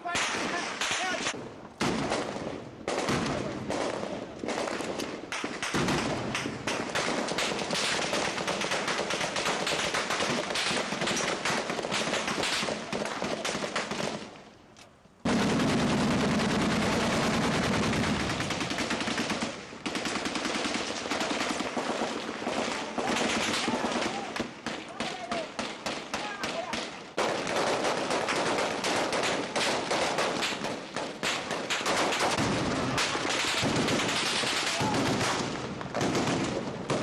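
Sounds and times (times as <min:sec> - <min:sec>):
automatic gunfire: 0:00.1 - 0:14.3, 0:15.2 - 0:37.0.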